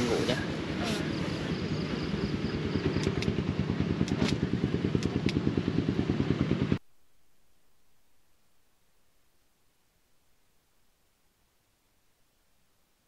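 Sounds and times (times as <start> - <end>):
small engine running: 0.0 - 6.8
sharp clicks: 3.0 - 3.4.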